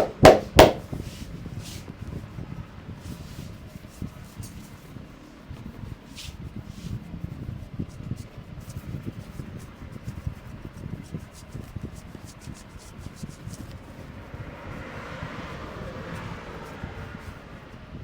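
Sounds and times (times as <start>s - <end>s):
hands thumping and rubbing head: 0.0s - 1.8s.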